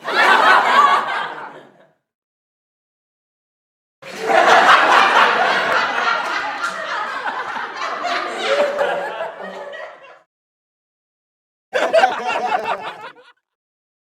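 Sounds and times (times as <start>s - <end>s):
studio audience laughing: 0.0s - 2.0s, 4.0s - 10.3s, 11.8s - 13.5s.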